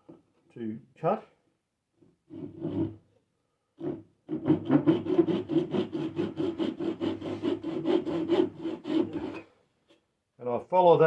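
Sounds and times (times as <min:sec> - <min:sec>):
saw cutting wood: 0:04.3 - 0:09.5.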